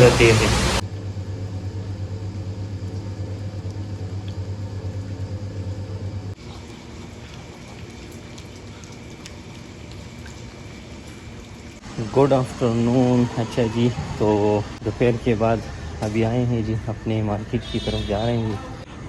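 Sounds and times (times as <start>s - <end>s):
vehicle engine running: 0.0s - 7.5s.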